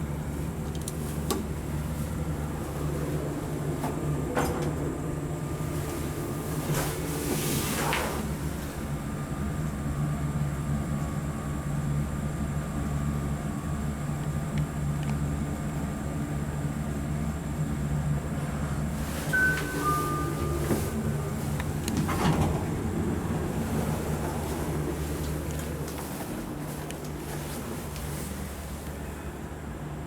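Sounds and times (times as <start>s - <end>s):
elevator hum: 0.0s - 30.0s
two-note elevator chime: 19.2s - 21.9s.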